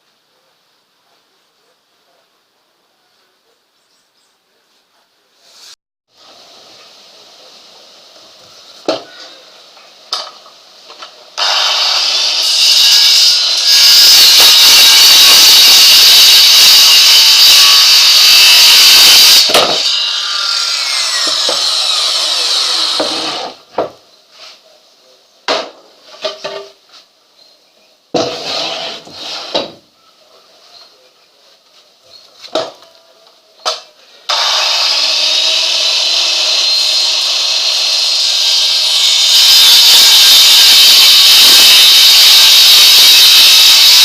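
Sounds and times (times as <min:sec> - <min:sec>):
electric power saw cutting wood: 0:10.9 - 0:23.7, 0:34.3 - 0:44.0
saw blade winding down: 0:11.4 - 0:23.6, 0:34.3 - 0:44.0.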